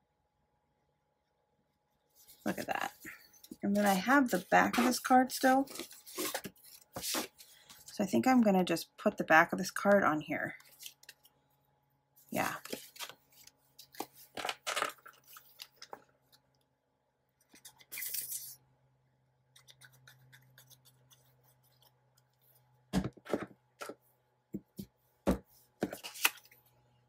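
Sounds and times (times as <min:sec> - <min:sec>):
paper rustling: 0:02.1 - 0:07.9, 0:10.6 - 0:11.3, 0:12.5 - 0:16.0, 0:25.8 - 0:26.6.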